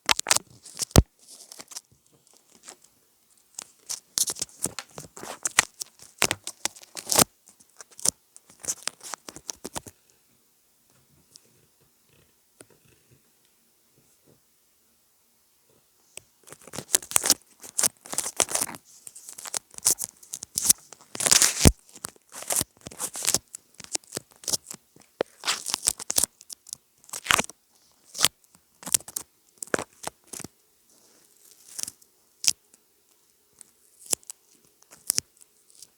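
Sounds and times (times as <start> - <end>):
crinkling and tearing: 0.0 - 2.9, 3.5 - 9.9, 16.5 - 30.5, 31.3 - 32.6, 33.6 - 35.9.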